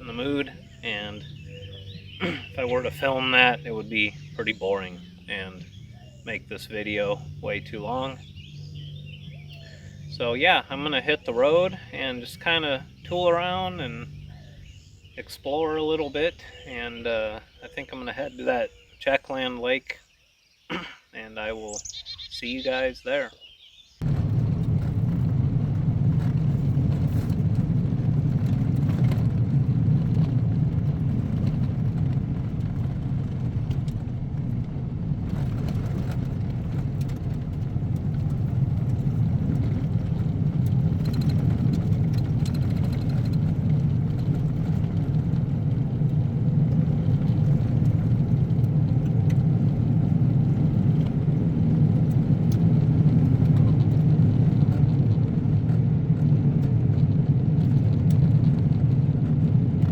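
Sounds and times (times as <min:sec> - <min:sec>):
vehicle engine and tyre rumble: 0:00.0 - 0:20.6, 0:21.2 - 0:22.7, 0:23.5 - 0:59.9.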